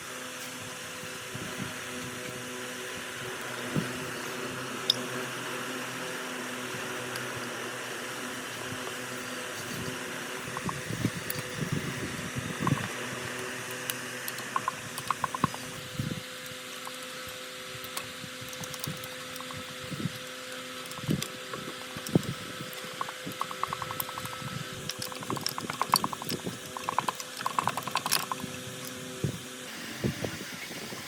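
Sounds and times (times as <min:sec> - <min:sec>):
low machine hum: 0:00.0 - 0:31.0
rattling ticks: 0:12.5 - 0:15.8, 0:17.8 - 0:29.0.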